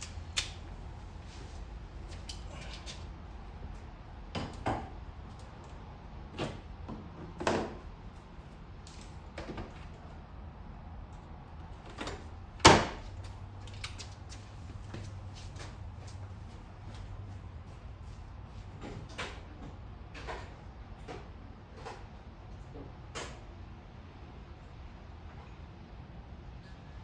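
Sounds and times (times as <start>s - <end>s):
steady low hum: 0.0s - 6.3s.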